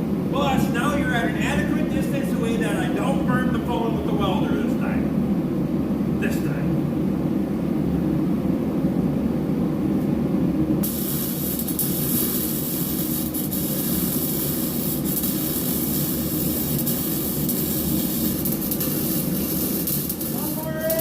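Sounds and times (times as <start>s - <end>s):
heater low roar: 0.0s - 21.0s
welding arc hissing: 10.8s - 21.0s.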